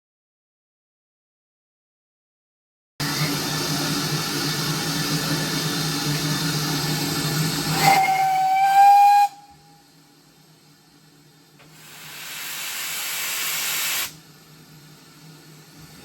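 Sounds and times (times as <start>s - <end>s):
steam locomotive hissing: 3.0s - 9.8s, 11.6s - 14.2s
steam whistle: 7.7s - 9.8s.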